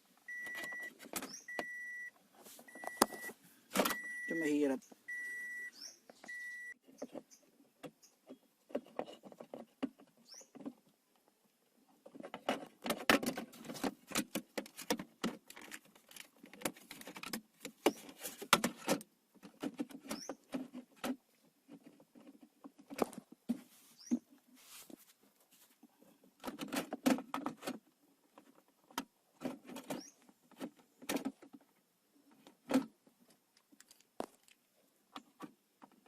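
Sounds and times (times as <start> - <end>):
plastic clicking and scraping: 6.1 - 11.3, 11.9 - 24.4, 26.2 - 36.0.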